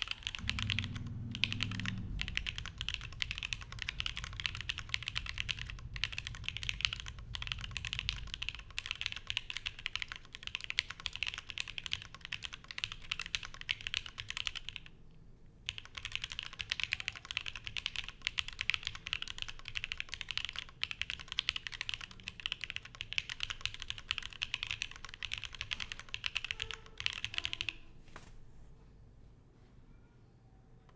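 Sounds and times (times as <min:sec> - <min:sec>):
mechanical keyboard typing: 0:00.0 - 0:15.0, 0:15.7 - 0:27.9.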